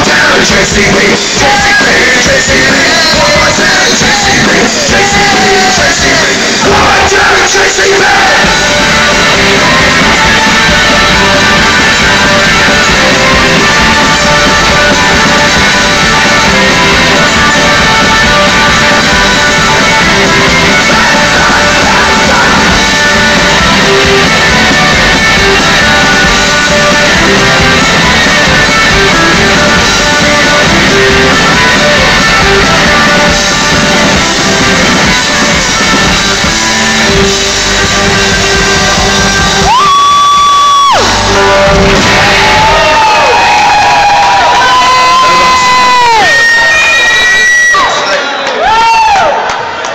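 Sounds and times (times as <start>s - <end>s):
shouted vocals: 0.0s - 29.2s, 39.6s - 49.4s
live rock band playing: 0.0s - 48.1s
distorted electric guitar: 0.0s - 48.3s.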